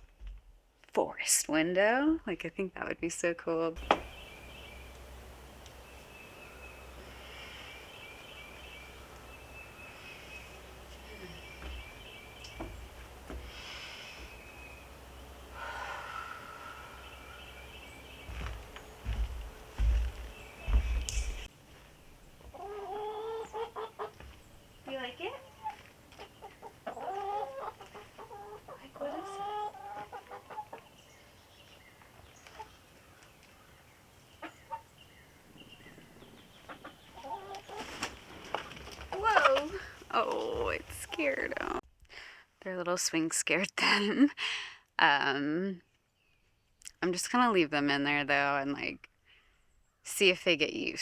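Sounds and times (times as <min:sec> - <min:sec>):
small birds chirping: 0:03.1 - 0:41.8, 0:45.2 - 0:51.0
hens clucking: 0:03.8 - 0:21.5, 0:22.1 - 0:33.5, 0:34.2 - 0:35.1, 0:35.9 - 0:41.8
low bumps: 0:08.8 - 0:22.6.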